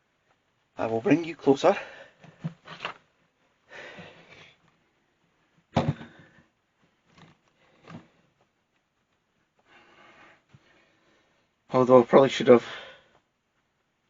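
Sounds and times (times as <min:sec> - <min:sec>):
camera handling rustle: 0:02.2 - 0:03.1.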